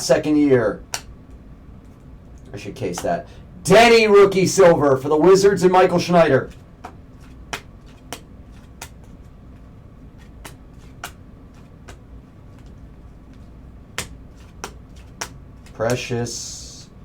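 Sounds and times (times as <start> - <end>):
low room hum: 0.0 - 17.0
trading cards and plastic holders clicking: 6.5 - 9.3, 10.2 - 16.0.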